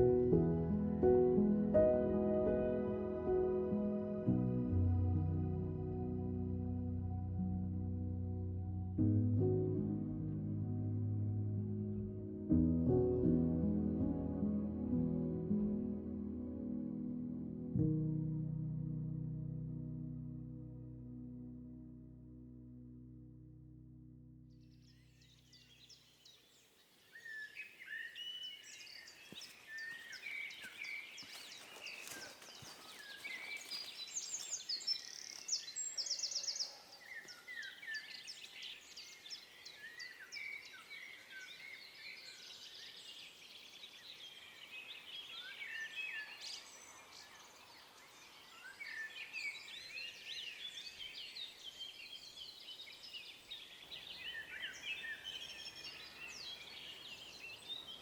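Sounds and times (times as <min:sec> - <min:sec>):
songbirds chirping and trilling: 0:24.7 - 0:58.0.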